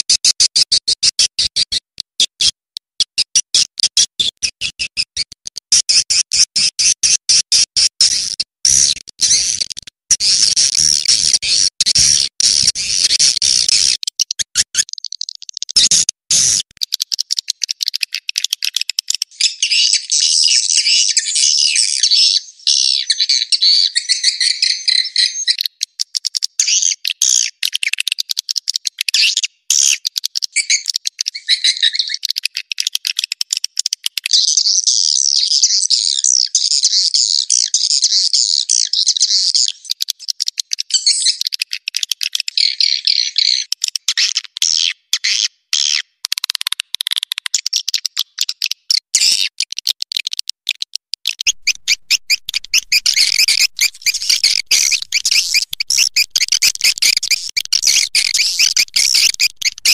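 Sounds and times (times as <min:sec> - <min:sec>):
swiftlets chirping: 0:51.4 - 0:59.9.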